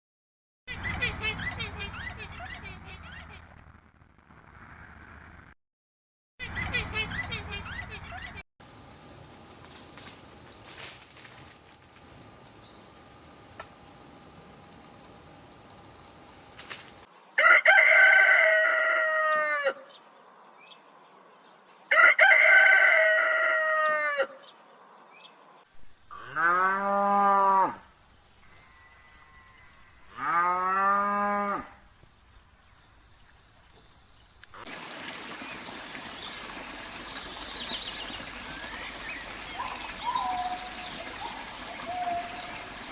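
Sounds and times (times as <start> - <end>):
high bird chirps: 9.5 - 16.1, 25.8 - 34.7
rooster crowing: 17.4 - 19.9, 21.9 - 24.4.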